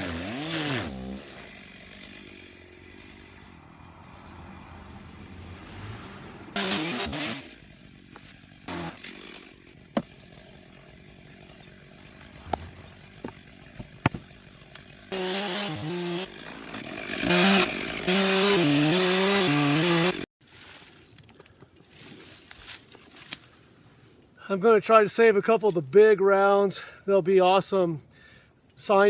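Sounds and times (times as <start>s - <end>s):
chainsaw cutting log: 0.0s - 20.3s.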